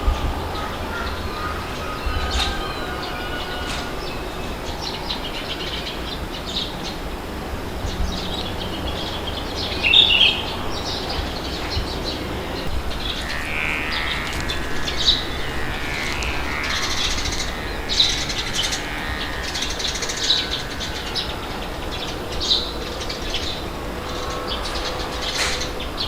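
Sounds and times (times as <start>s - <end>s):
birds chirping: 0.0s - 26.0s
low wind rush: 0.0s - 26.0s.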